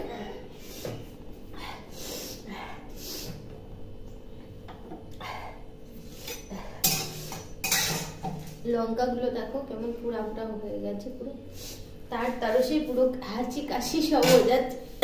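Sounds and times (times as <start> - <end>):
woman sniffing and breathing: 0.4 - 3.5, 11.5 - 12.0.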